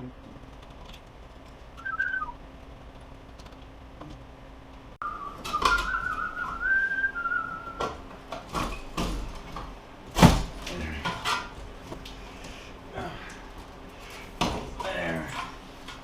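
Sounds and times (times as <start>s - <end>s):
man whistling: 1.8s - 2.4s, 5.0s - 7.9s.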